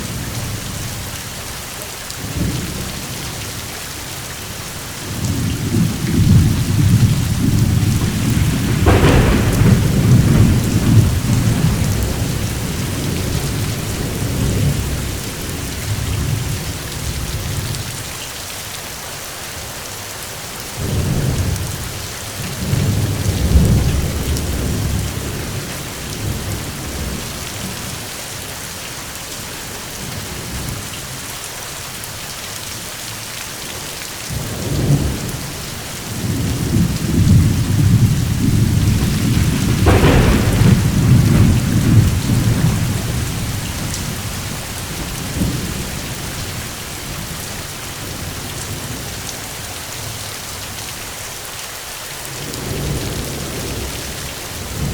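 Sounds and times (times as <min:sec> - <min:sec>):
rain falling: 0:00.0 - 0:54.9
thunder rumbling: 0:04.5 - 0:18.0, 0:20.8 - 0:28.0, 0:34.3 - 0:49.1
thunder crack: 0:05.1 - 0:17.6, 0:34.3 - 0:48.3.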